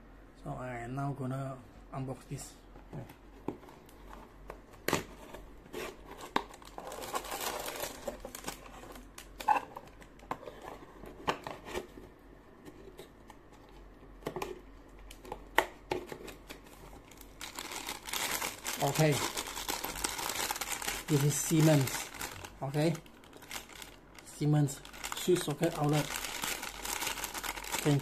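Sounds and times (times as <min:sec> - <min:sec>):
packaging crinkling and tearing: 0:06.1 - 0:10.0, 0:16.3 - 0:28.0.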